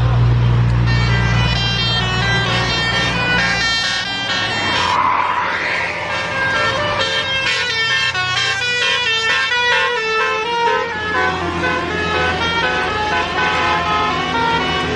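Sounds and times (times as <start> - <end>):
diesel bus engine rumbling: 0.0 - 14.9
multi-tone bus air horn melody: 0.8 - 5.3, 6.0 - 14.9.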